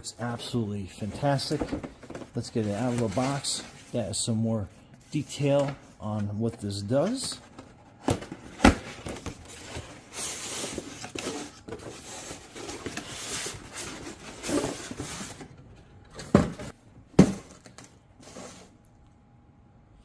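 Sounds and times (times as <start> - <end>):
packaging rustling: 0.2 - 4.2, 5.1 - 15.5.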